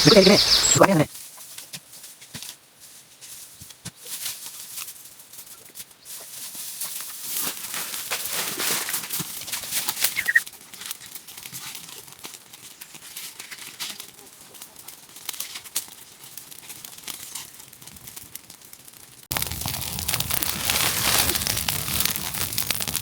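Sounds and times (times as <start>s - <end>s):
rustling and crackling: 0.0s - 23.0s.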